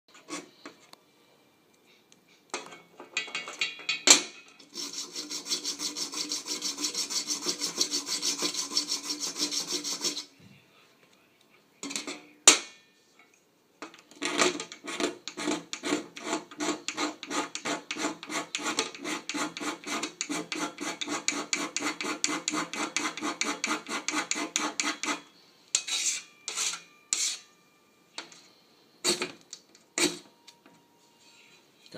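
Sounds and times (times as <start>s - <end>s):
scraper sharpening rasps: 4.7s - 10.3s, 14.8s - 27.5s.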